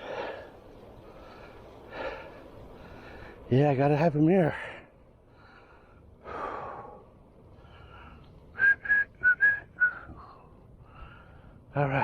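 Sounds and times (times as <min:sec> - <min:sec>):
person whistling short notes: 0:08.6 - 0:10.1.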